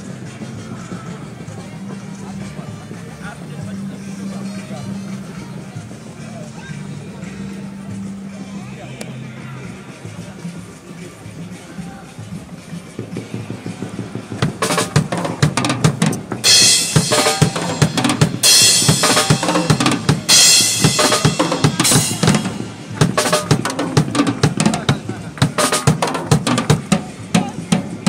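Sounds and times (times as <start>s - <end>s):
drum kit played hard: 13.3s - 28.0s
cymbals washing: 14.4s - 28.0s.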